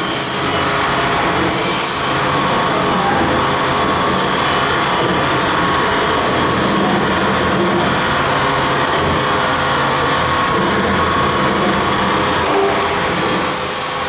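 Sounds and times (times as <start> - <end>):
knife grinding machine grinding: 10.3 - 14.0.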